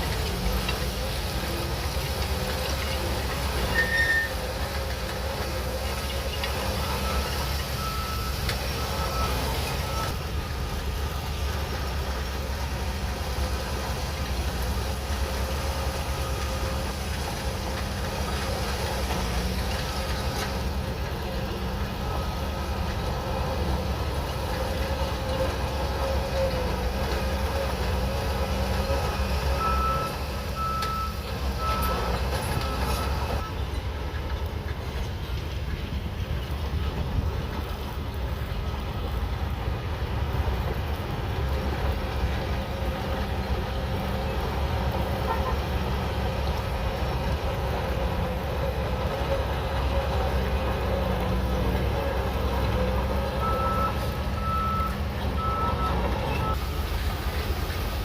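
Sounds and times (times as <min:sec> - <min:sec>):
bulldozer diesel engine running: 0:00.0 - 0:58.0
reversing alarm beeps: 0:06.8 - 0:10.2, 0:29.6 - 0:33.6, 0:53.4 - 0:56.8.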